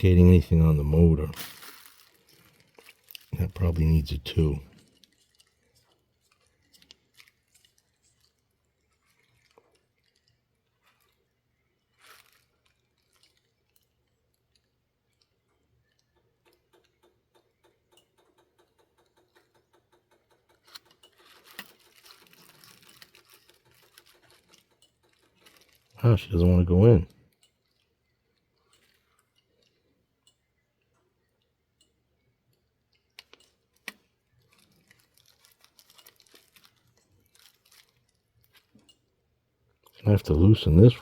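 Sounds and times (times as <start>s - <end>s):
small handling noises: 0.0s - 41.0s
soft rustle: 1.0s - 15.4s, 20.6s - 26.0s, 32.6s - 39.1s
light clicks of model parts: 1.1s - 26.4s, 27.0s - 41.0s.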